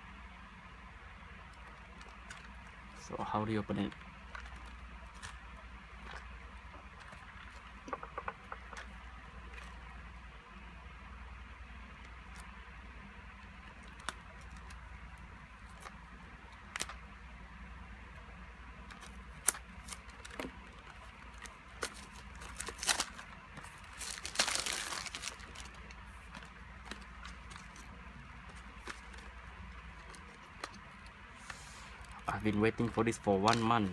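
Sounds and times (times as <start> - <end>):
steady low hum: 0.0 - 33.9
packaging crinkling and tearing: 1.5 - 9.8, 13.5 - 14.9, 15.6 - 17.1, 18.8 - 33.9
packaging clicks and taps: 32.1 - 33.9.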